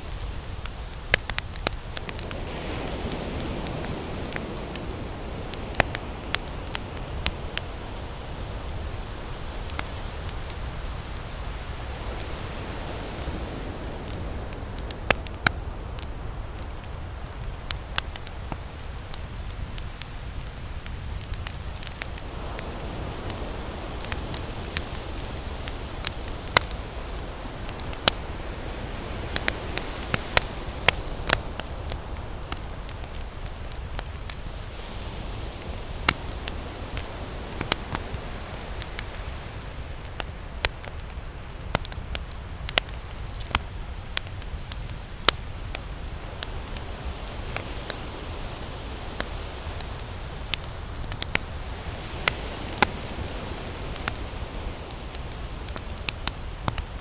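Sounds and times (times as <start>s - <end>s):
campfire crackling: 0.0s - 57.0s
low hiss: 0.0s - 57.0s.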